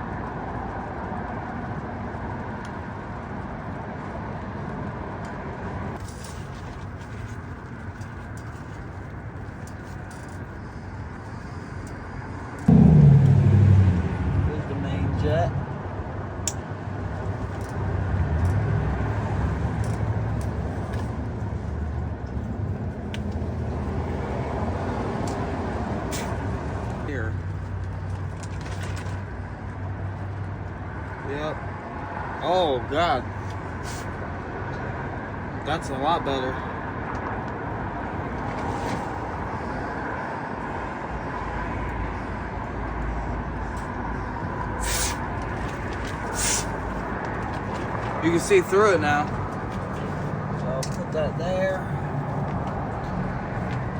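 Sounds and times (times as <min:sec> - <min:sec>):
low background rumble: 0:10.5 - 0:24.9
short air hiss: 0:44.8 - 0:45.2, 0:46.3 - 0:46.8.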